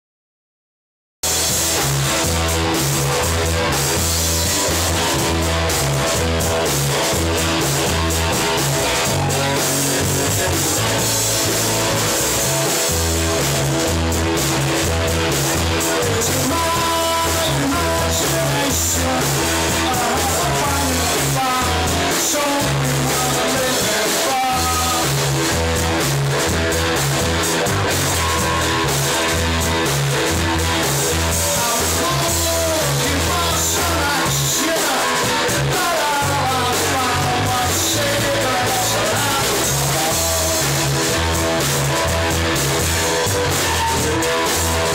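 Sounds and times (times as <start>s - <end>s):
drum kit playing: 1.2s - 44.9s
electric guitar: 1.2s - 44.9s
person singing: 15.2s - 25.8s, 27.9s - 44.9s.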